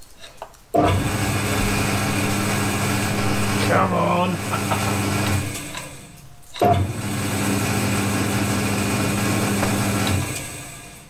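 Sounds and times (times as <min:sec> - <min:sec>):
electric motor running: 0:00.8 - 0:11.0.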